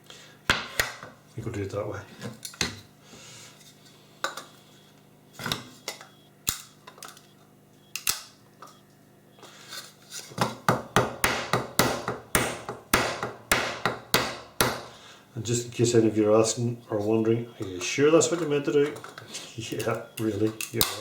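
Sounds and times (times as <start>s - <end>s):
hammer striking metal box: 10.4s - 15.0s.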